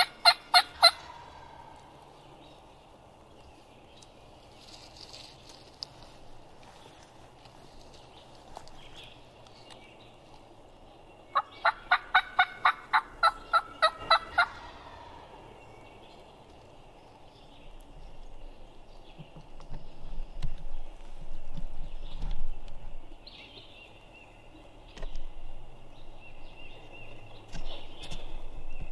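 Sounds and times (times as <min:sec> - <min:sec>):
turkey yelping: 0:00.0 - 0:01.5, 0:11.4 - 0:15.0.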